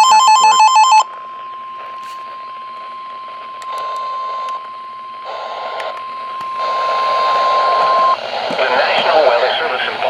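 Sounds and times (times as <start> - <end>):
steady high alarm tone: 0.0 - 8.6
radio static: 0.0 - 10.0.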